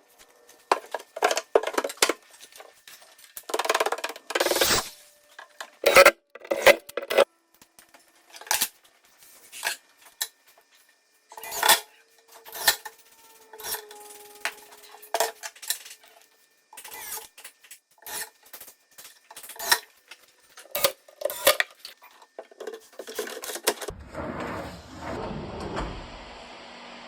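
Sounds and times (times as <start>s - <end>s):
drawer sliding scrape: 23.7s - 26.3s.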